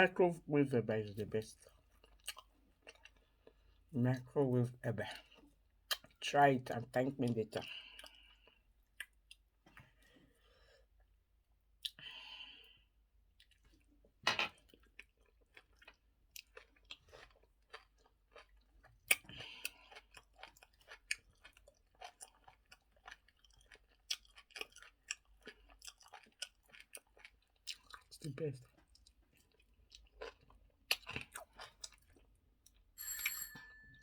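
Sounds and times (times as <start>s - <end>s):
person chewing with wet mouth clicks: 2.0s - 3.6s, 5.8s - 6.2s, 7.9s - 9.5s, 11.8s - 12.0s, 13.4s - 13.9s, 14.8s - 32.8s.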